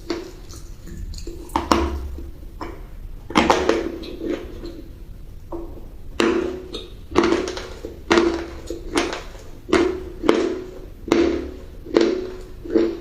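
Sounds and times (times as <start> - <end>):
crunchy chewing: 0.0 - 2.1, 6.7 - 13.0.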